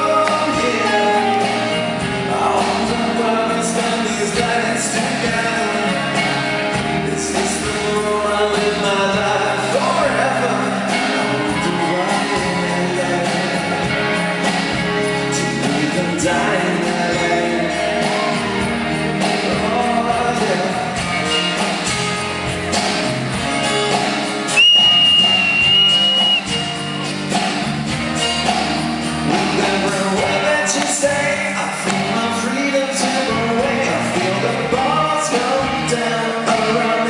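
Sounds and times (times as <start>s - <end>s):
live rock band with singing: 0.0s - 37.0s
shrill high whistle: 24.5s - 26.7s.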